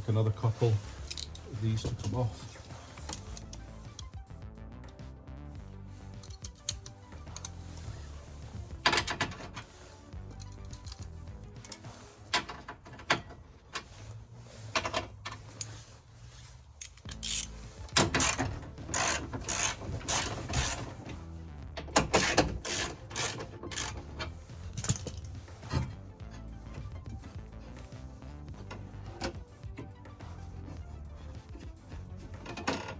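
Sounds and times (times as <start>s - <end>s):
ratchet wrench clicking: 6.2s - 7.6s, 16.8s - 21.0s, 22.0s - 25.3s.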